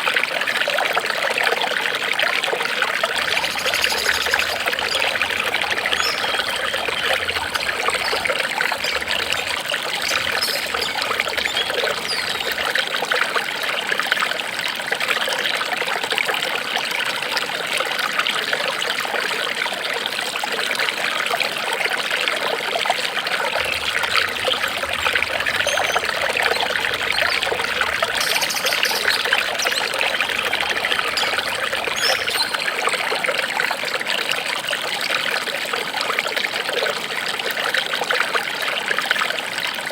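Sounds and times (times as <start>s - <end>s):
water trickling: 0.0s - 39.9s.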